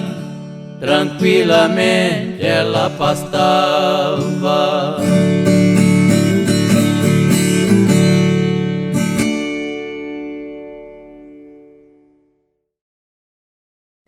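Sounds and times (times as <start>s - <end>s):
person singing: 0.0s - 5.4s
strummed acoustic guitars: 0.0s - 12.2s.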